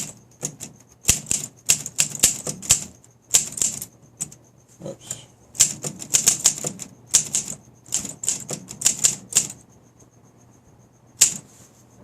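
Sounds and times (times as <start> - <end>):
manual typewriter keystrokes: 0.0 - 4.4, 5.6 - 9.6, 11.2 - 11.4.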